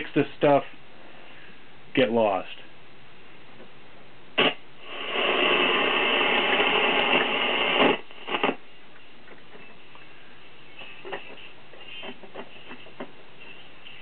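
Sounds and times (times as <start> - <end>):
radio static hiss: 4.3 - 14.0.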